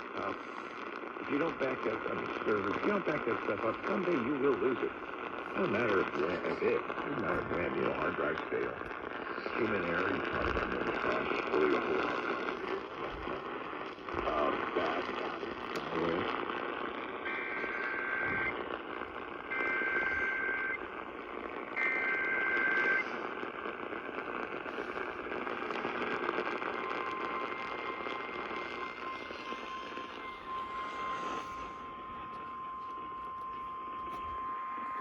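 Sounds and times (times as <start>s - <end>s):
radio hiss: 0.0s - 35.0s
digital data bursts: 1.2s - 35.0s
steady alarm tone: 10.3s - 35.0s.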